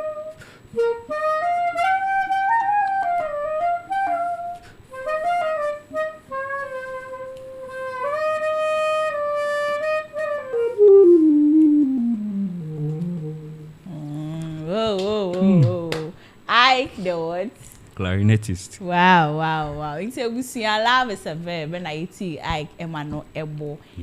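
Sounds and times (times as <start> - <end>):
clarinet playing slow melody: 0.0 - 14.8.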